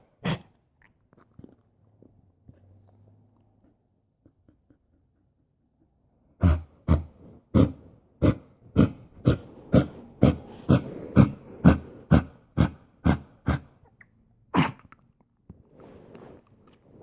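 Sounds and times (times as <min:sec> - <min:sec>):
dog coughing: 0:00.2 - 0:00.5, 0:06.4 - 0:13.8, 0:14.5 - 0:15.0.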